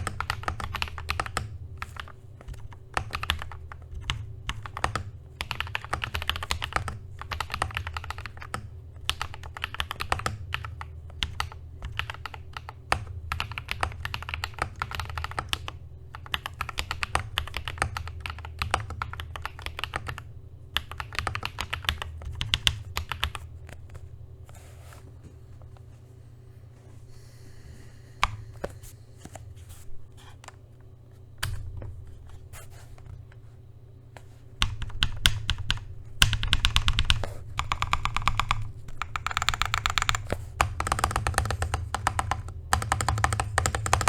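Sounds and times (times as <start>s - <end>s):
mechanical keyboard typing: 0.0s - 24.0s, 34.6s - 44.0s.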